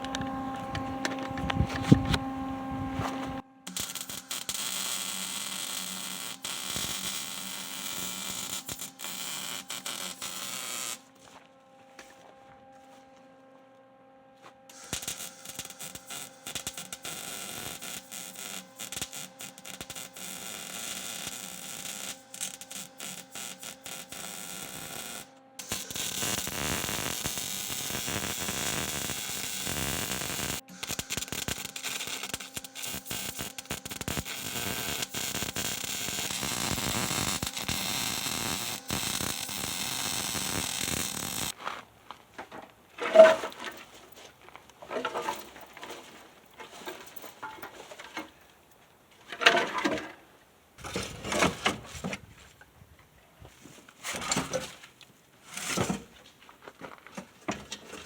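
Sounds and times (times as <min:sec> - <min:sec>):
arc welding crackling hiss: 0:03.7 - 0:11.3, 0:14.7 - 0:41.6, 0:45.2 - 0:48.4.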